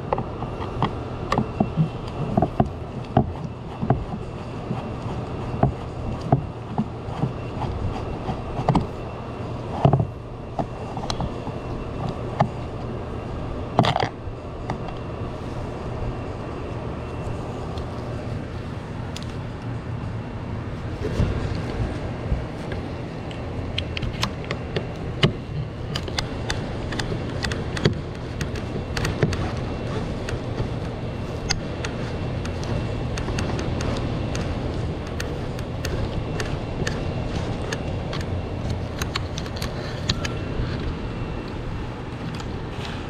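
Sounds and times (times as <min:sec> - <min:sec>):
steady low hum: 0:00.0 - 0:43.0.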